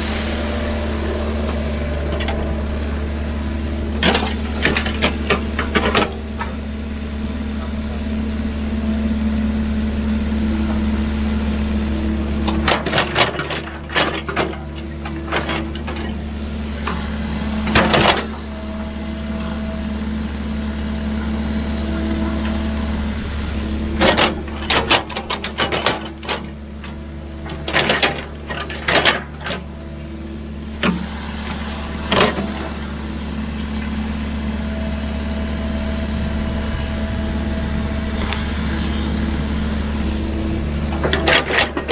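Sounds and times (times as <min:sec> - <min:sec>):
diesel engine running: 0:00.0 - 0:41.9
hydraulic whine: 0:00.0 - 0:41.9
metallic clanks and knocks: 0:04.0 - 0:06.6, 0:12.4 - 0:16.2, 0:24.0 - 0:29.7, 0:40.8 - 0:41.9.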